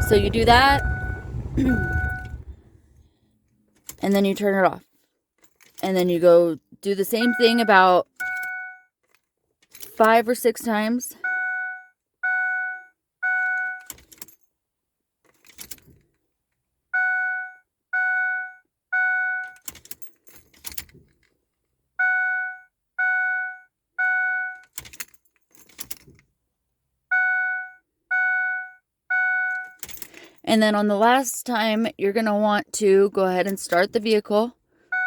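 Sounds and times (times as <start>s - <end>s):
dashboard warning chime dinging: 0.0s - 2.8s, 7.0s - 8.8s, 27.1s - 29.8s, 30.5s - 35.0s.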